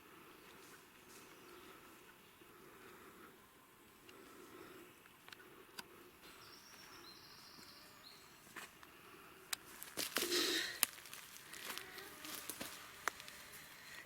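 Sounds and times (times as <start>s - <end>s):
twigs snapping: 9.5s - 14.0s
footsteps rustling through leaf litter: 9.7s - 14.0s.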